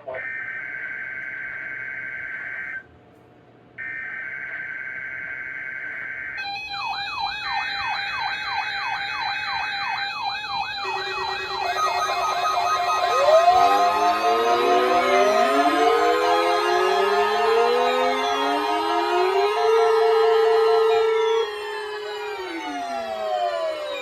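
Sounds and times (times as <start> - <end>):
warbling siren alarm: 6.2 - 24.0
steady beeping tones: 10.4 - 24.0
buzzy two-tone data signal: 10.8 - 13.2.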